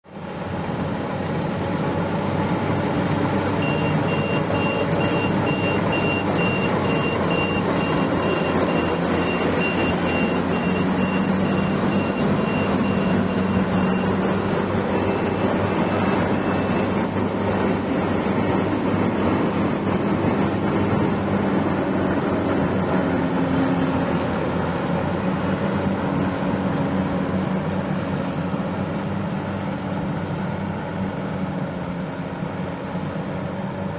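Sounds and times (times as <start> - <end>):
combine harvester engine drone: 0.1 - 33.9
high-pitched warning beep: 3.6 - 17.9.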